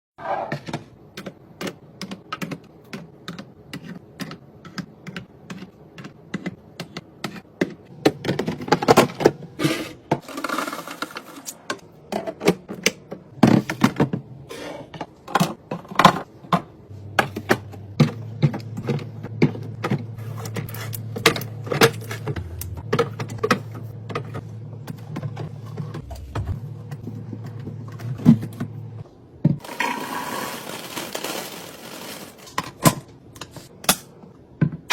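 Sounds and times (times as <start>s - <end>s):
low steady hum: 16.8s - 29.6s
groceries and jars clattering: 29.5s - 33.7s.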